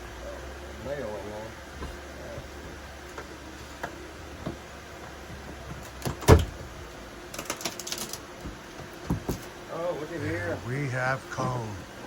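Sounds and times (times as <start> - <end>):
small clicks and rattles: 7.3 - 8.3.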